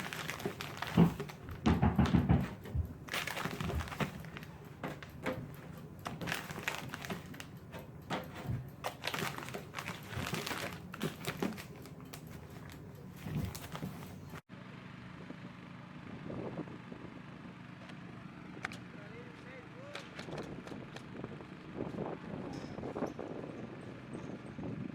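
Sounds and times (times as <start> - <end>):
shingles being nailed down: 0.0 - 14.4.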